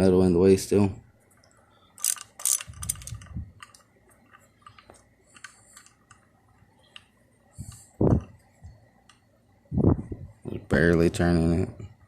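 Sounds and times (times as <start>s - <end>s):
metallic clicks and scrapes: 1.4s - 6.3s.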